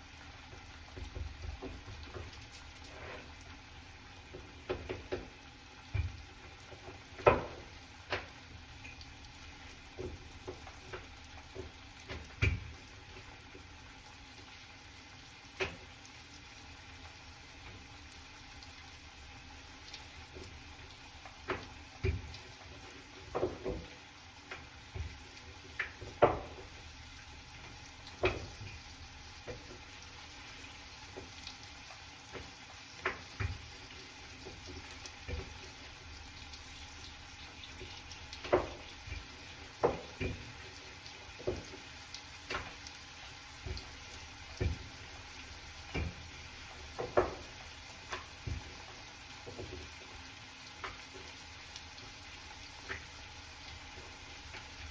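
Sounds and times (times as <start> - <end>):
running water: 0.0 - 54.9
potatoes and utensils knocking: 4.3 - 8.4, 21.4 - 26.7, 37.7 - 40.6, 45.8 - 50.0.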